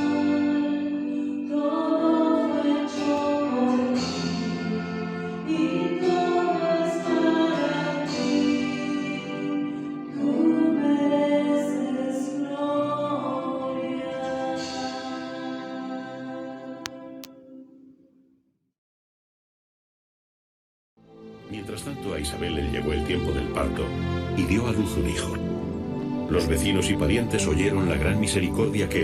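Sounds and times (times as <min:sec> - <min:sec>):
choral singing: 0:00.0 - 0:17.5.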